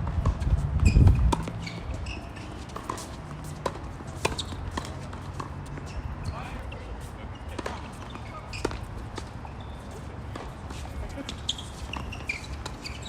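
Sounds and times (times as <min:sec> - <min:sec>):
wind buffeting microphone: 0:00.0 - 0:02.0
tennis balls hit and bouncing: 0:00.0 - 0:13.0.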